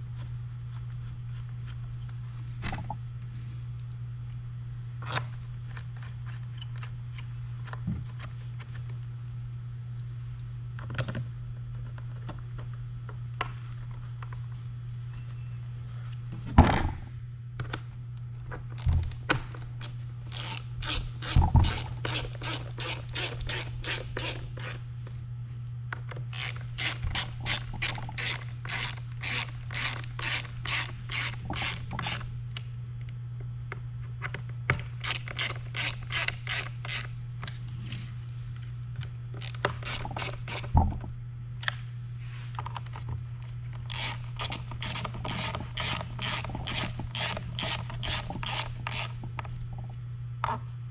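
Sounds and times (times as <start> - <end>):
steady low hum: 0.0 - 50.9
hand ratchet clicking: 20.3 - 24.8, 26.3 - 32.2, 35.0 - 37.1, 43.9 - 49.1.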